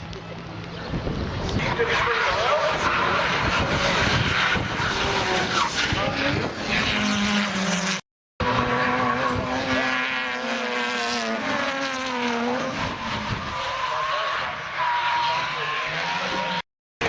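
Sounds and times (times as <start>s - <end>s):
tyres skidding and squealing: 0.8s - 9.9s, 11.3s - 16.7s
car engine revving high: 1.6s - 13.8s.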